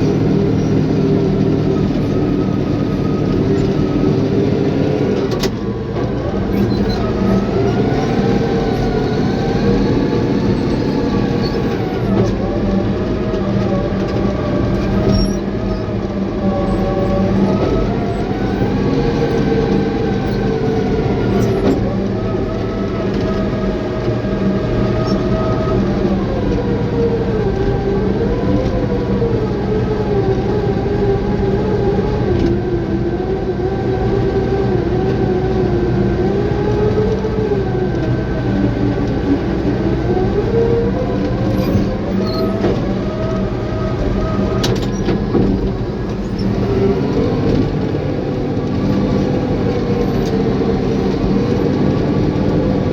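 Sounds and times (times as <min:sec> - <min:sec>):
bulldozer diesel engine under load: 0:00.0 - 0:52.9
low drone: 0:00.0 - 0:52.9.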